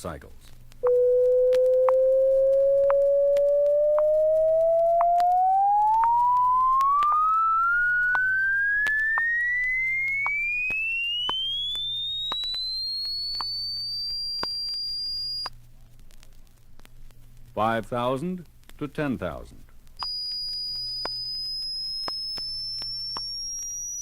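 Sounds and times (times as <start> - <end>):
faint hum: 0.0 - 24.0
record surface clicks: 0.5 - 15.6, 20.0 - 24.0
rising sine tone sweep: 0.8 - 15.5, 20.0 - 24.0.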